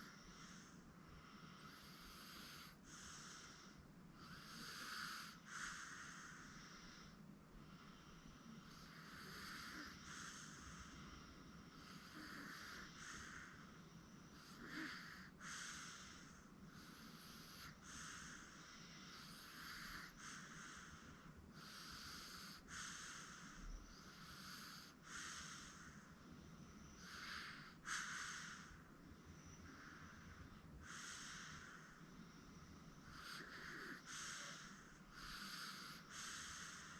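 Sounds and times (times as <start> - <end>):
baby breathing with light snoring: 0.0 - 36.9
baby snorting: 33.2 - 36.9.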